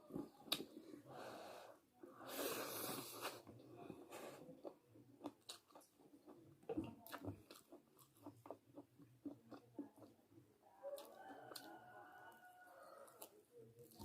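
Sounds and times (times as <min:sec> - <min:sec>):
person chewing with mouth smacks: 0:00.1 - 0:00.8, 0:02.7 - 0:10.2.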